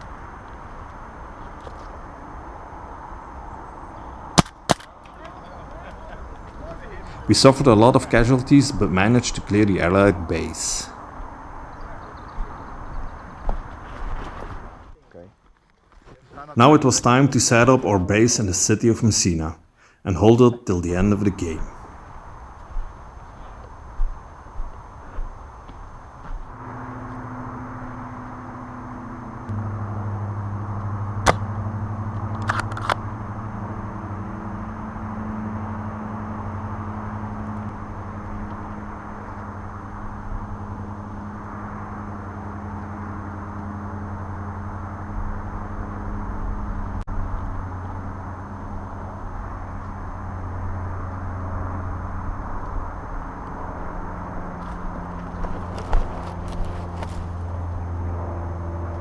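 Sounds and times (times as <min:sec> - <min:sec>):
engine humming: 0:06.6 - 0:11.2.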